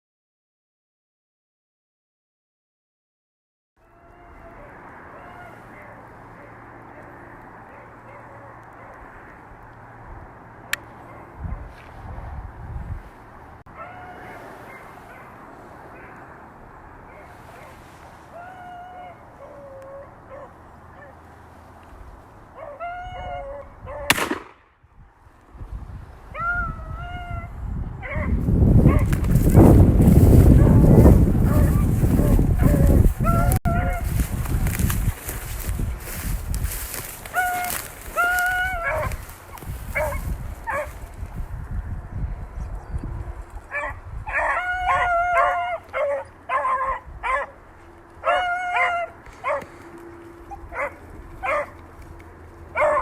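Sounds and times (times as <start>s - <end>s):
dog howling: 3.8s - 6.6s, 13.7s - 15.2s, 18.3s - 21.1s, 22.6s - 24.1s, 37.3s - 39.2s, 44.3s - 47.5s, 48.2s - 49.7s
dogs baying: 4.0s - 9.4s, 30.3s - 36.3s, 36.9s - 41.0s, 43.7s - 51.8s, 52.7s - 53.0s
gunshot: 24.1s - 24.8s.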